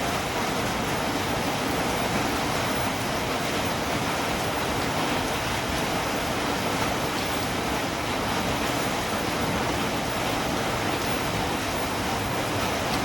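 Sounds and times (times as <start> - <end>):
steady rain falling: 0.0 - 13.0.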